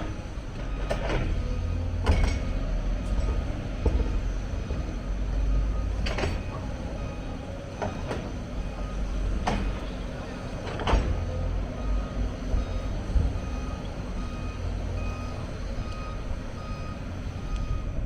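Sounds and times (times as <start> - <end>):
excavator diesel engine rumbling: 0.0 - 18.0.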